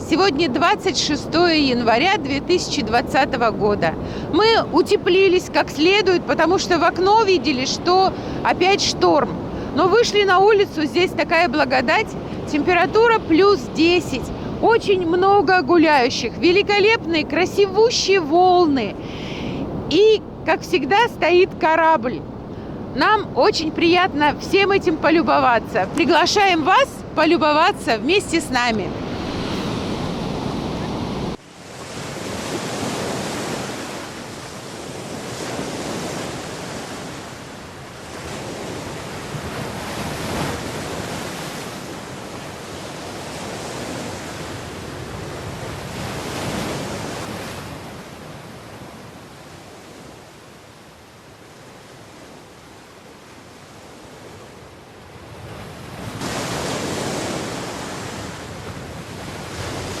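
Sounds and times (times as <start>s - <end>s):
surf breaking on beach: 21.9s - 48.2s, 55.3s - 60.0s.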